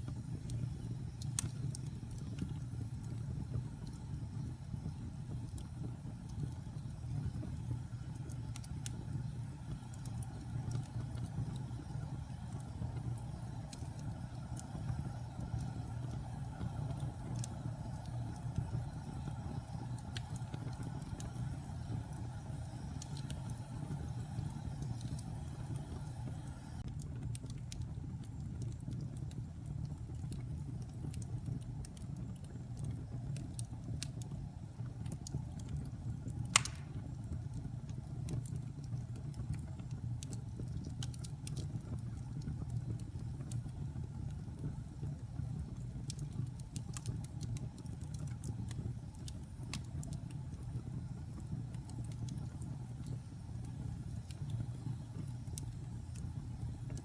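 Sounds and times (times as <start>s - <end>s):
fire rumbling and crackling: 0.0s - 57.0s
loud pop of fire: 36.5s - 37.2s.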